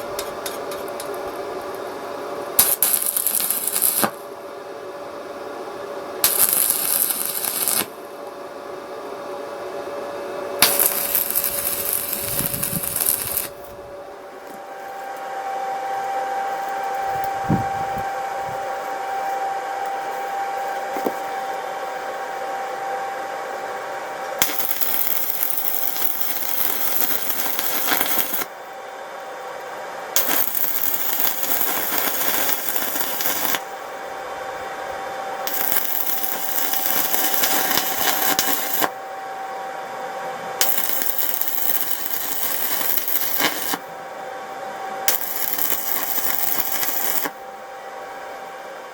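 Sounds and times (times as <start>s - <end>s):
power tool motor whine: 6.2s - 7.9s, 10.5s - 13.9s, 24.4s - 28.5s, 30.2s - 33.7s, 34.3s - 39.5s, 40.5s - 43.8s, 45.0s - 47.4s
tool cutting metal hissing noise: 6.2s - 7.9s, 10.6s - 13.7s, 45.1s - 47.3s.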